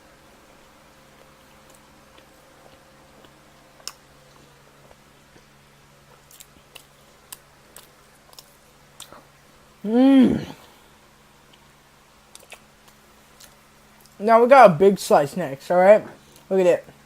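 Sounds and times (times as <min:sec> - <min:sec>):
faint steady hum: 0:00.0 - 0:17.0
person chewing food: 0:00.6 - 0:09.7, 0:10.4 - 0:14.2, 0:16.2 - 0:16.5
mouth clicks and smacks: 0:12.3 - 0:14.2.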